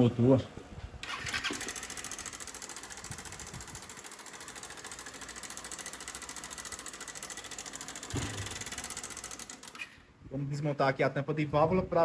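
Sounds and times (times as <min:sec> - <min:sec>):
motorcycle engine idling: 0:01.0 - 0:09.7
rapid ticking clatter: 0:01.0 - 0:09.9.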